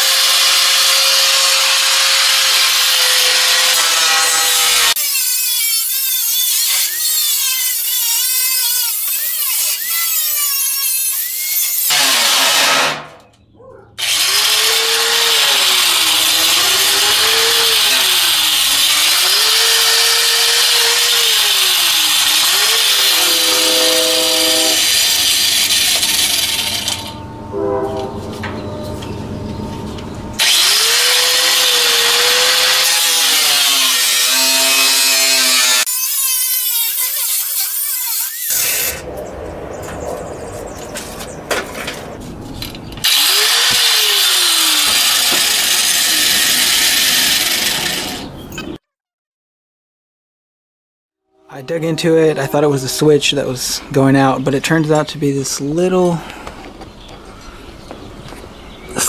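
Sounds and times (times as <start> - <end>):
angle grinder running under load: 0.0 - 13.1, 14.0 - 27.2, 30.3 - 39.0, 42.6 - 48.4.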